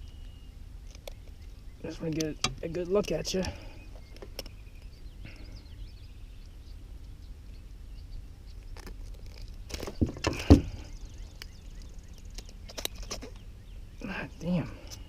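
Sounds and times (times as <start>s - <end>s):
fish thrashing knocks and thumps: 9.7s - 10.9s.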